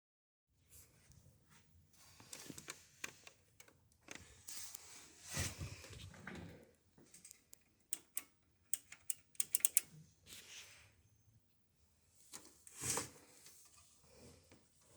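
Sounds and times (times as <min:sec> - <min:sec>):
sharp clicks: 0:07.9 - 0:09.9.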